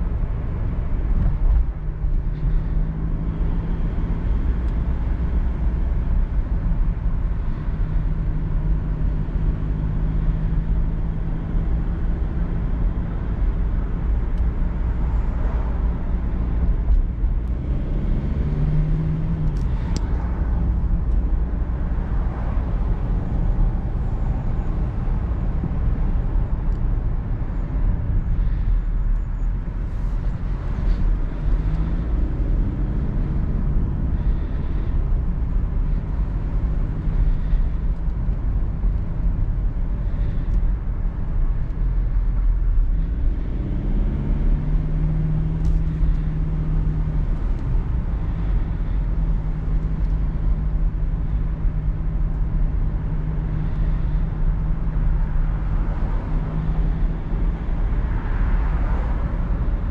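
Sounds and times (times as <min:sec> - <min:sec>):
road and wind rumble: 0:00.0 - 0:59.9.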